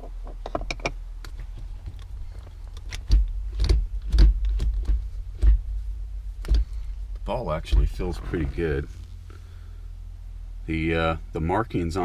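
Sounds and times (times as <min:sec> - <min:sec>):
heavy knocks and deep thumps: 0:01.5 - 0:09.6.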